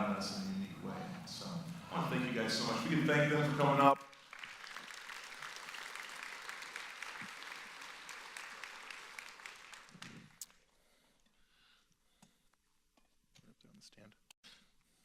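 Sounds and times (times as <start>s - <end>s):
congregation applauding: 1.8s - 10.6s.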